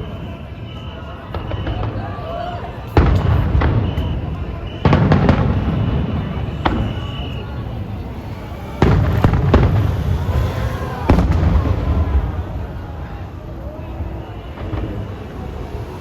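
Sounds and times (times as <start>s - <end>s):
firework sharp crack: 2.9s - 12.8s
firework booms with rumbling echo: 2.9s - 13.3s.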